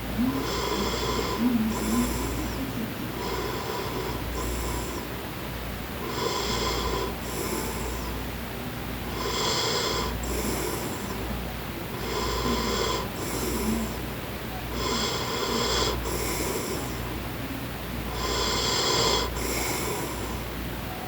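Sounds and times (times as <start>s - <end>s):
man snoring: 0.2s - 5.1s, 9.1s - 11.1s, 12.0s - 14.0s, 14.8s - 17.0s, 18.1s - 20.4s.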